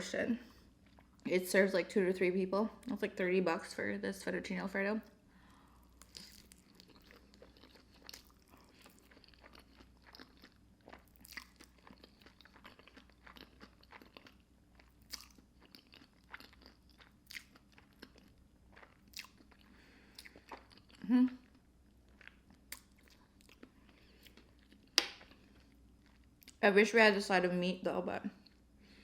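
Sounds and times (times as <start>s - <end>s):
chewing crunchy food: 0.7s - 1.2s, 5.8s - 26.6s.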